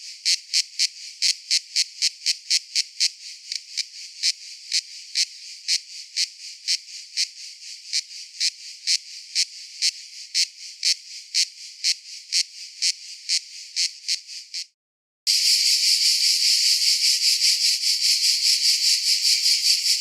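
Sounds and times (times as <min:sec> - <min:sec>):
cicada buzzing: 0:15.3 - 0:20.0.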